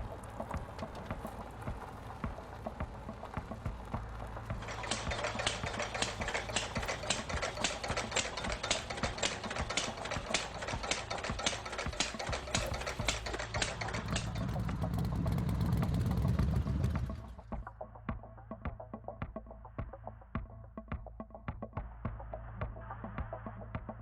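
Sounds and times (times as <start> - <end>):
engine knocking: 0.0 - 17.6
deep rumble: 0.0 - 18.8.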